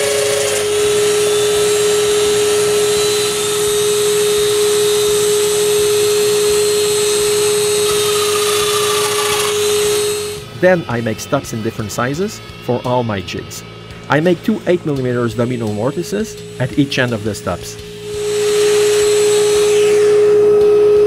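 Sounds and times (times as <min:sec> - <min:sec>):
power joiner whining: 0:00.0 - 0:21.0.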